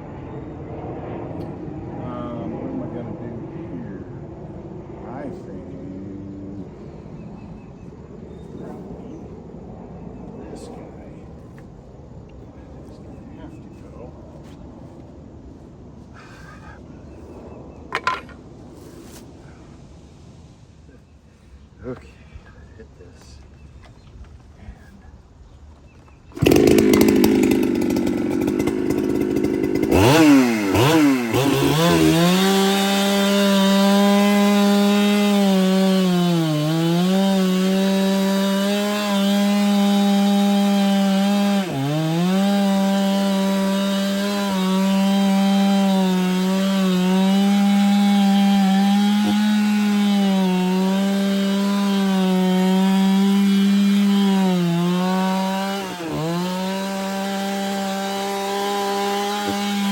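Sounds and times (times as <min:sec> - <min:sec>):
chainsaw cutting wood: 0:17.9 - 0:18.4, 0:26.3 - 0:59.9.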